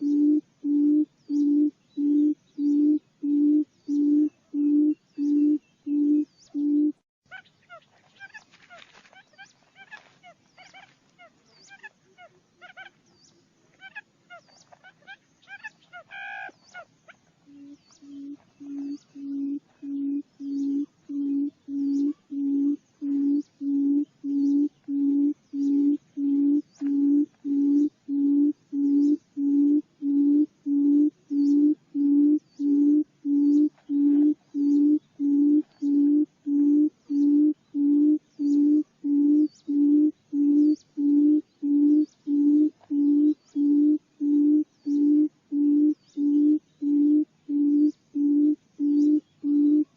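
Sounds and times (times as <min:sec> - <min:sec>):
bird booming low hoots: 0:00.0 - 0:07.0, 0:17.5 - 0:49.9.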